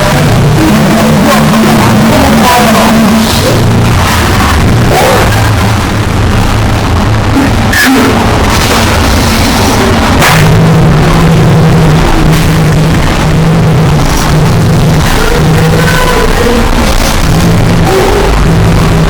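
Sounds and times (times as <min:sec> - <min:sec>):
low hum: 0:00.0 - 0:19.0
wall of distorted noise: 0:00.0 - 0:19.0
sharp crackling hits: 0:03.2 - 0:19.0.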